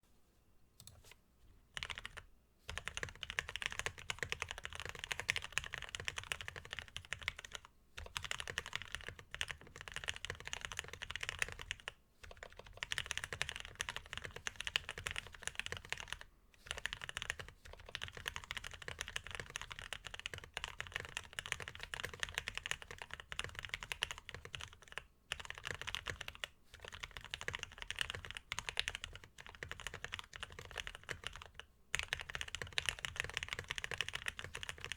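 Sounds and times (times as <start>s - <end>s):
mechanical keyboard typing: 1.8s - 34.9s.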